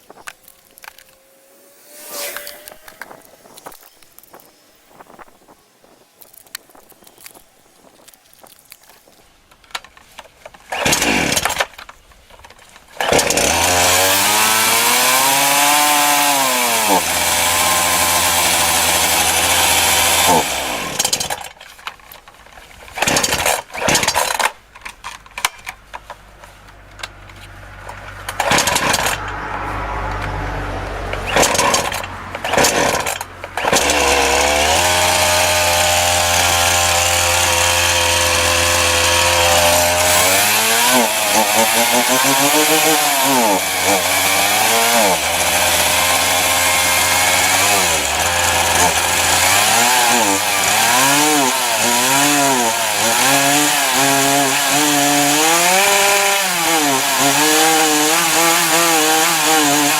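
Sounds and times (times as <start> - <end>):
chainsaw revving and idling: 10.7 - 11.9, 12.9 - 21.6, 22.8 - 59.9.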